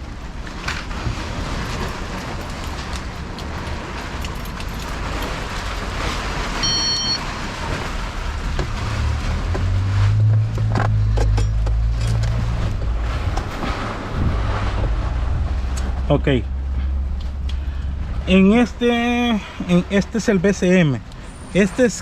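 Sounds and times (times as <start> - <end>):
traffic rumble and hiss: 0.0 - 22.0
high electronic tone: 6.6 - 7.2
low hum: 6.6 - 20.5.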